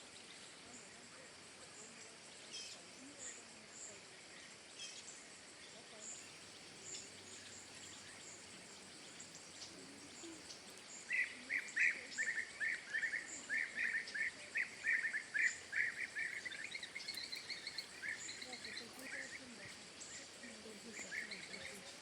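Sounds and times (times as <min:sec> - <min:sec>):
faint background hiss: 0:00.0 - 0:22.0
bird chirping: 0:06.0 - 0:22.0
thin high calls: 0:06.1 - 0:22.0.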